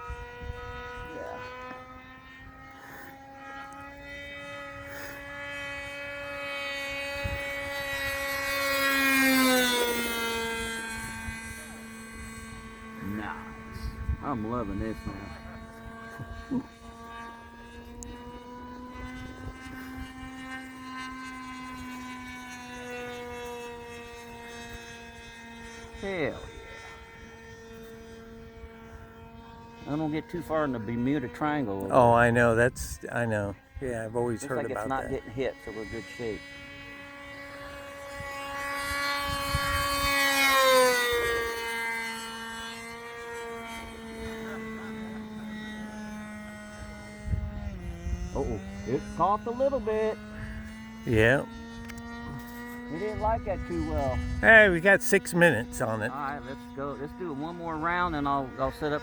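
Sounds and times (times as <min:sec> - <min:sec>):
model airplane engine droning: 0:00.0 - 0:54.4, 0:56.0 - 0:59.0.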